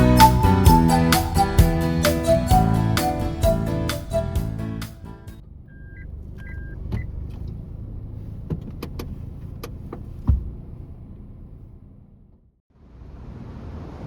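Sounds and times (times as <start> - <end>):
low steady rumble: 0.0 - 13.4
clicks and knocks in car: 8.4 - 10.8.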